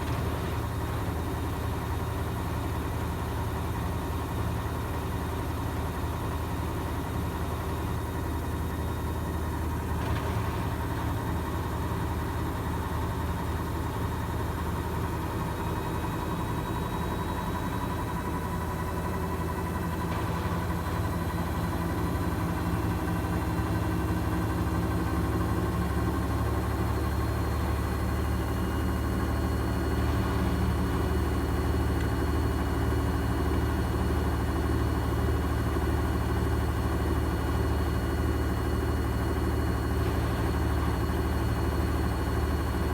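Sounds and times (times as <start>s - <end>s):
washing machine spinning: 9.3s - 34.5s, 38.2s - 42.9s.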